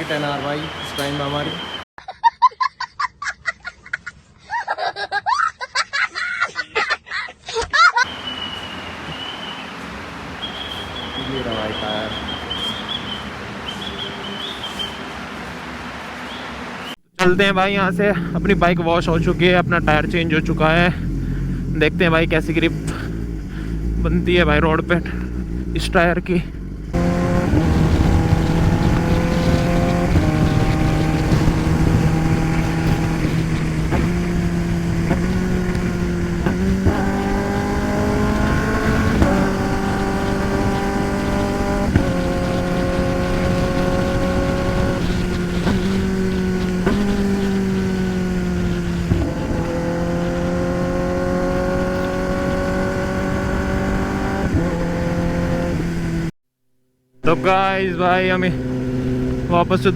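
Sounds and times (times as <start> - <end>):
motorcycle engine shifting gears: 8.0 - 17.0, 17.8 - 56.3, 57.2 - 59.9
wind noise: 26.5 - 56.3.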